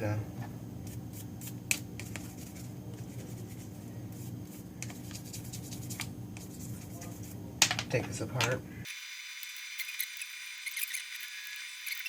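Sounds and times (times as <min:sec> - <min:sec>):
steady low hum: 0:00.0 - 0:08.9.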